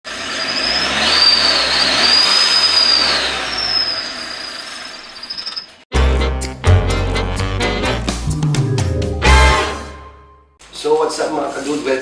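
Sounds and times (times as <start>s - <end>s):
turbo whistle: 0.3s - 4.6s.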